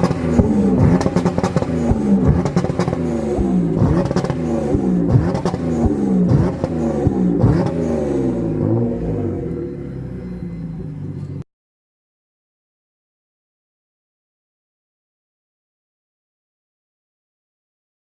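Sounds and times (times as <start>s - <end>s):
exhaust pops: 0.0s - 7.8s
car engine revving: 0.0s - 11.4s.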